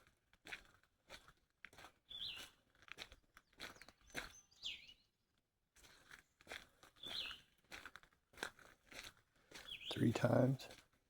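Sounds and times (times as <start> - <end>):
bird chirps: 2.1 - 2.5, 3.8 - 5.1, 7.0 - 7.4, 9.6 - 10.2.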